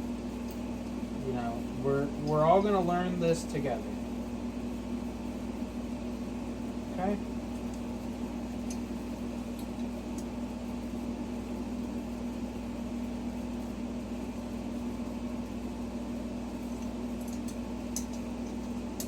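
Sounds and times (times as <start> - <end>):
steady mechanical hum: 0.0 - 19.0.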